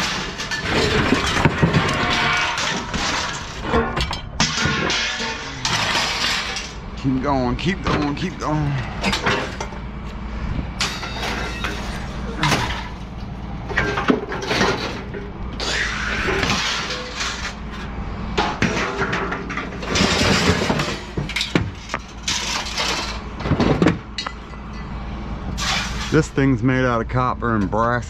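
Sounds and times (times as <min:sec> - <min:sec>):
glass breaking: 0:00.0 - 0:06.9, 0:10.8 - 0:13.0, 0:13.7 - 0:17.6, 0:18.4 - 0:24.8
junk crashing and clattering: 0:00.0 - 0:26.6.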